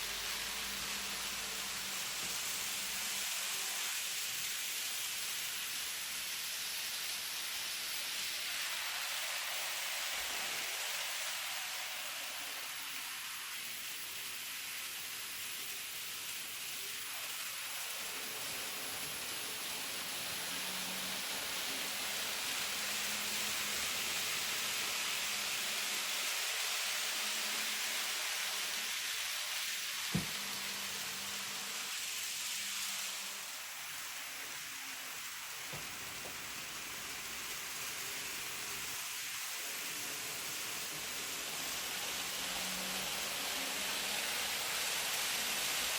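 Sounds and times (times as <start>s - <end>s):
model train wheels hissing on rail: 0.0s - 45.9s
faint motor hum: 15.4s - 45.9s.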